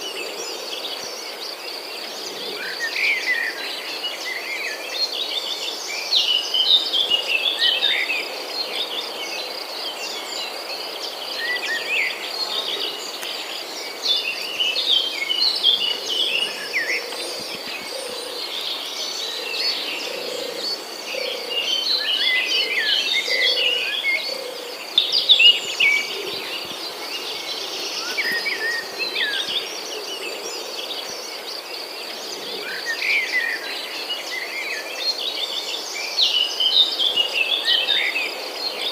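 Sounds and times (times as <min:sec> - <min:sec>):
birds chirping: 0:08.9 - 0:34.2.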